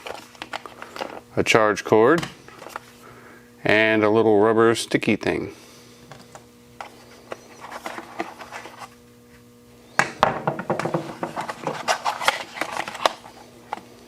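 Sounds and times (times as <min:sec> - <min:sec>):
packaging being handled: 0:11.0 - 0:13.9.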